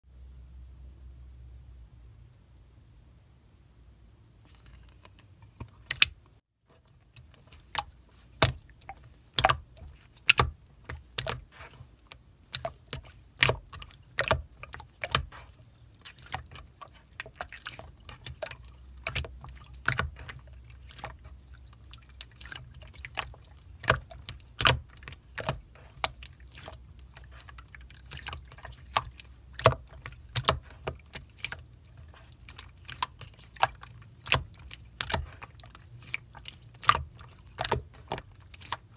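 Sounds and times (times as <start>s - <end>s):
slime squeezed with wet clicks: 12.5s - 38.9s.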